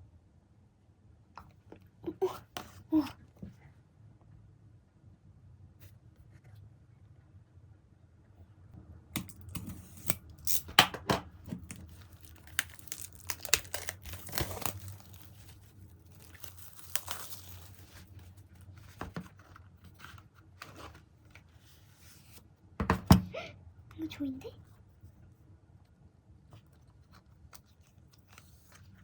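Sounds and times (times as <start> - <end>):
packaging tearing and crinkling: 9.2 - 18.6.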